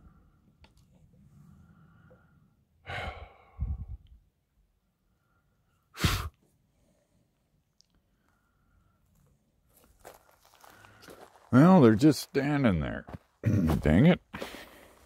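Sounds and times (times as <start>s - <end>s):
man sighing heavily: 2.8s - 4.0s, 14.4s - 15.0s
puff of air on microphone: 6.0s - 6.4s.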